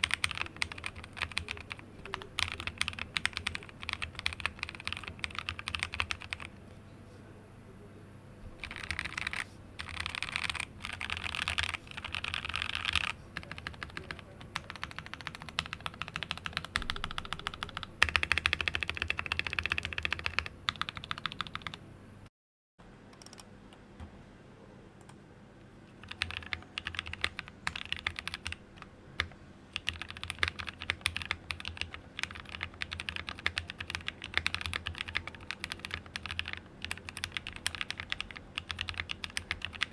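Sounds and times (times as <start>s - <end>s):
typing on mechanical keyboard: 0.0s - 6.5s, 8.6s - 21.8s, 26.0s - 28.6s, 29.8s - 39.9s.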